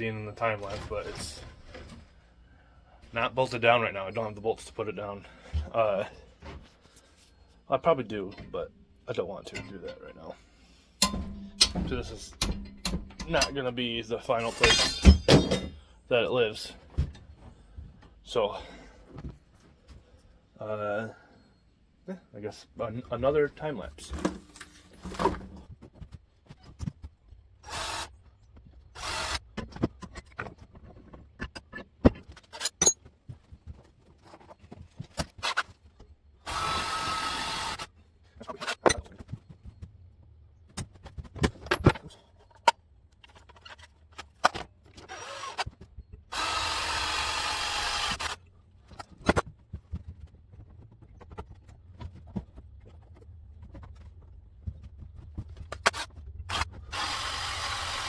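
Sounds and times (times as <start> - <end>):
handling clicks and knocks: 11.0 - 13.7
power drill drilling: 36.5 - 37.9, 45.1 - 45.6, 46.3 - 48.4, 56.5 - 58.0.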